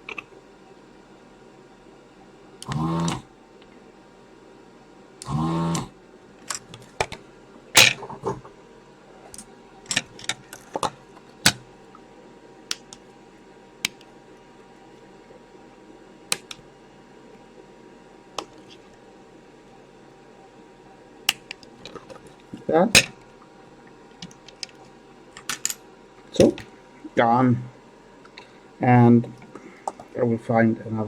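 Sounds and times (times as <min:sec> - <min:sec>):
desoldering pump buzzing: 0:02.6 - 0:03.4, 0:05.2 - 0:08.5.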